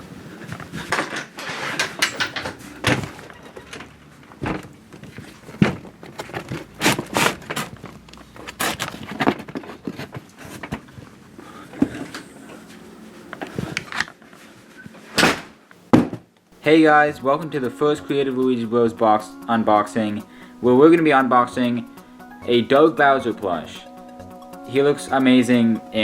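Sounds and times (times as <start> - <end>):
knocks and rustles of handled objects: 0.0 - 16.4.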